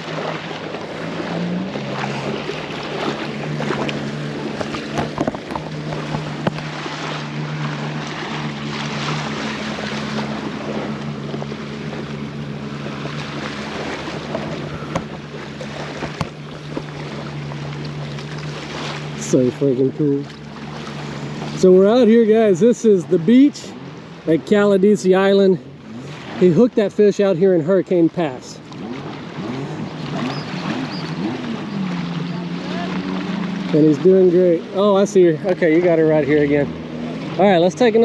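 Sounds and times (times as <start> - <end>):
wind on microphone: 0.0 - 17.4
boat engine droning: 0.0 - 38.0
surf lapping: 0.0 - 38.0.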